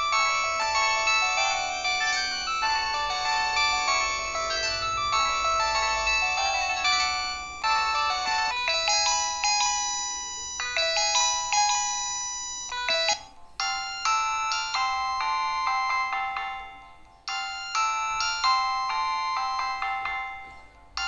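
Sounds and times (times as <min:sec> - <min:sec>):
electronic phone ringtone: 0:00.0 - 0:21.0.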